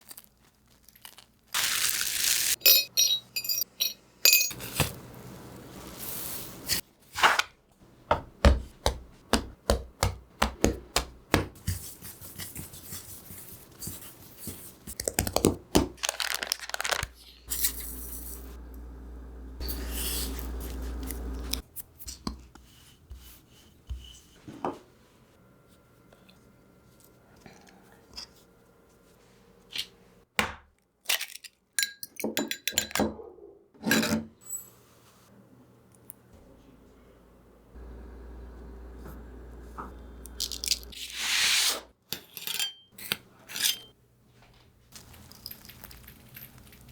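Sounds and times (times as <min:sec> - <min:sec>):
bread crunching and crackling: 0:00.0 - 0:02.6, 0:15.0 - 0:18.2.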